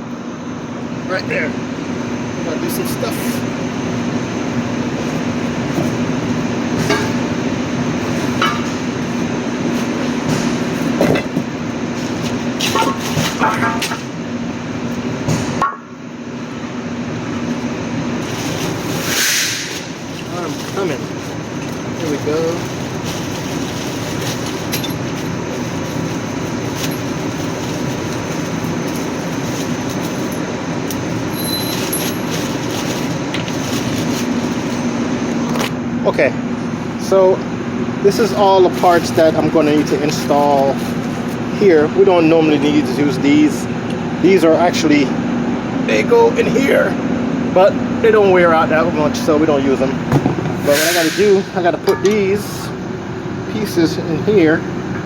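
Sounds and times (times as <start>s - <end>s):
mechanical running noise: 17.4s - 35.6s
metallic clinks of tools: 30.2s - 32.4s.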